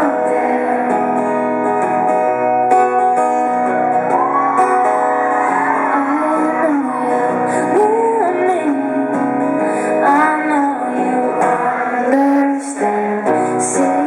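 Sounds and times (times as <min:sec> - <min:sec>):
woman singing: 0:00.0 - 0:01.5, 0:05.7 - 0:14.0.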